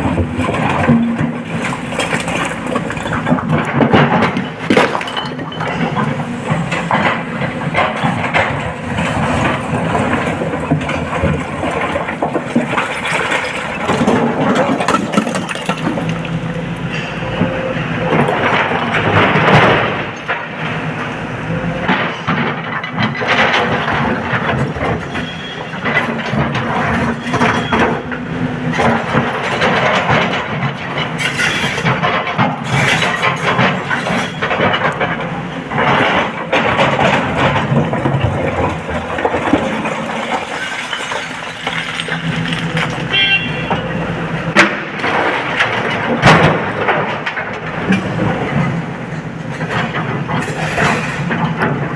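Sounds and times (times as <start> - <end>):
rocks crashing into truck body: 0.0 - 6.1
excavator diesel engine under load: 0.0 - 51.9.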